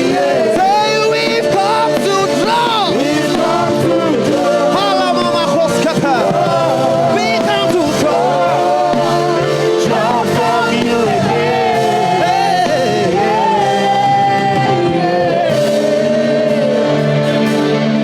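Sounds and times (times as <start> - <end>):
band playing: 0.0 - 18.0
gospel choir singing and shouting: 0.0 - 18.0.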